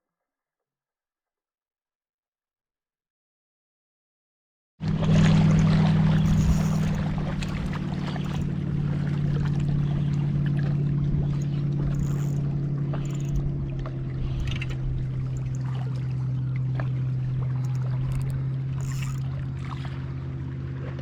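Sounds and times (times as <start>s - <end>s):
boat motor running: 4.8s - 21.0s
water noise: 4.8s - 21.0s.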